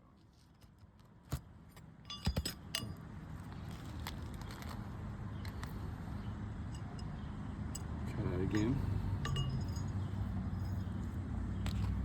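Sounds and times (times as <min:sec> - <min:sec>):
ringing metal clinks: 0:02.1 - 0:03.1, 0:07.8 - 0:10.8.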